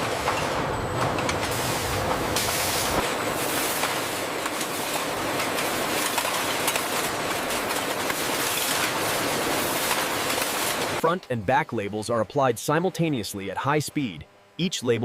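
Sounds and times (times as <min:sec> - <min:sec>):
bottling machinery running: 0:00.0 - 0:15.0.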